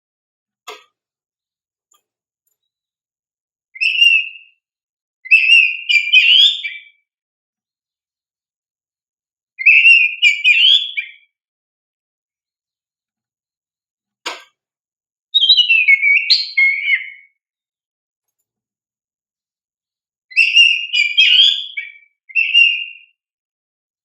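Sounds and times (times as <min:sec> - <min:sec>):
bird singing whistled phrases: 0:03.8 - 0:04.6, 0:05.2 - 0:07.1, 0:09.6 - 0:11.4, 0:15.4 - 0:17.4, 0:20.3 - 0:23.2.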